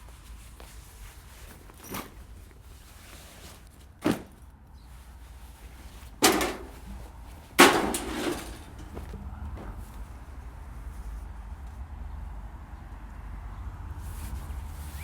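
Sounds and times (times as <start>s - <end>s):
thumps with rustle: 3.4s - 4.4s, 5.8s - 9.8s.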